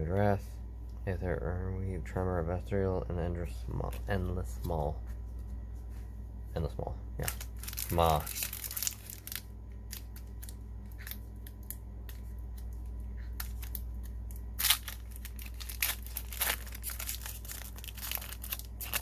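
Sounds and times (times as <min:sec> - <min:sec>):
steady low hum: 0:00.0 - 0:19.0
cards clicking and rustling: 0:07.2 - 0:19.0.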